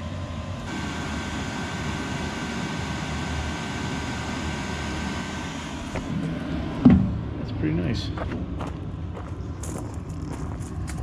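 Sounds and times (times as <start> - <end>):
air heater running: 0.0 - 8.3.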